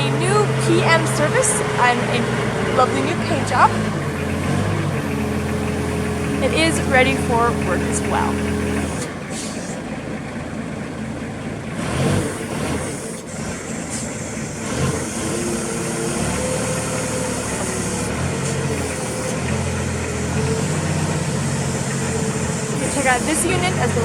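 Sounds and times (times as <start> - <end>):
forklift diesel engine running: 0.0 - 24.0.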